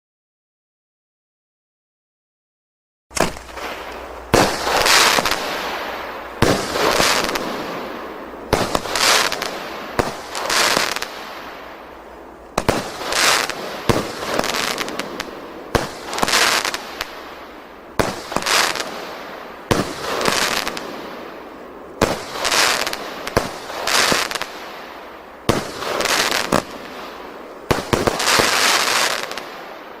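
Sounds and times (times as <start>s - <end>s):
firework burst: 3.1s - 30.0s
firework launch thump: 27.7s - 28.6s.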